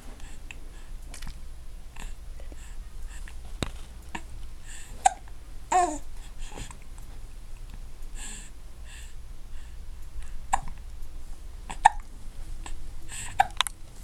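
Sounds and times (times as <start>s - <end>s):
baby hiccuping: 10.5s - 10.8s, 11.7s - 12.1s.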